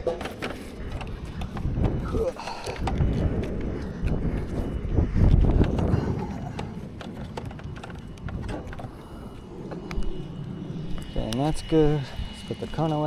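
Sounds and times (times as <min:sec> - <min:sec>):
low rumble: 0:00.0 - 0:13.0
knocks and clatter: 0:05.5 - 0:09.0.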